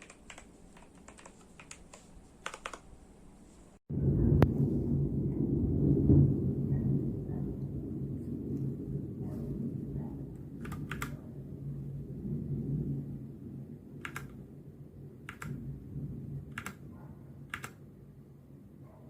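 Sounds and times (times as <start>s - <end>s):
mechanical keyboard key clacks: 0.0s - 2.8s, 10.6s - 11.2s, 14.0s - 14.4s, 16.5s - 16.8s, 17.5s - 17.8s
low rumble: 3.9s - 18.8s.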